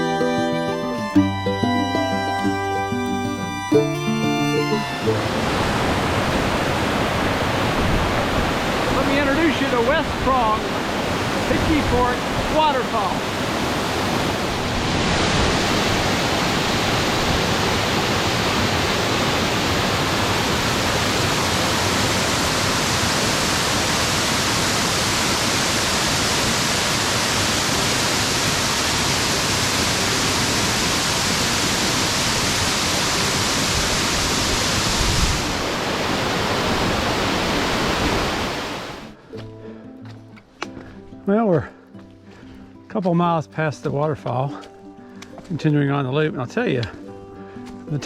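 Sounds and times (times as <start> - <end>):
waterfall rushing: 0.0 - 39.2.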